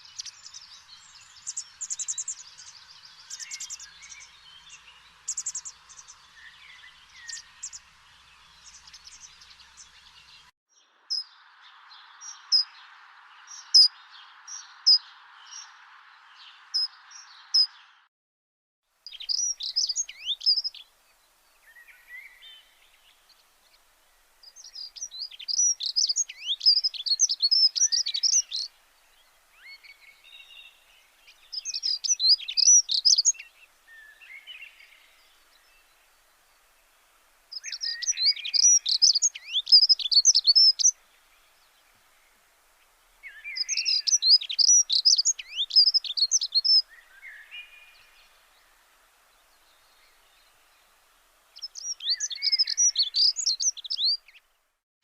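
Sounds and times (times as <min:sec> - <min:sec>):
small birds chirping: 0:00.0 - 0:18.0, 0:19.0 - 0:54.8
steady hiss: 0:19.0 - 0:53.6.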